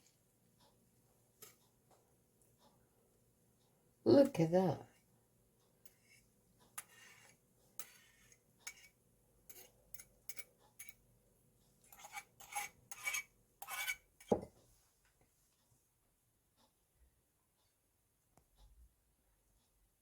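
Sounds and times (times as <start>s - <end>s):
crockery clinking and scraping: 6.8s - 11.0s.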